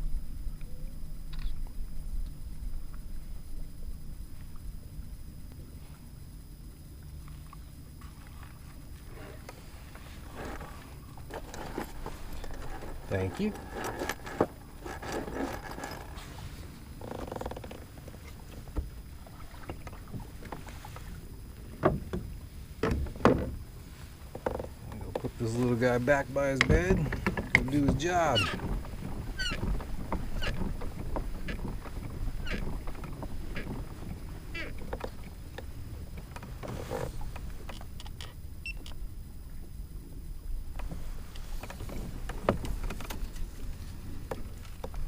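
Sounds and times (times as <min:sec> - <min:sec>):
water and wind rumbling: 0:00.0 - 0:45.0
knocks on kayak: 0:21.8 - 0:23.6
gear knocking on kayak hull: 0:26.5 - 0:37.7.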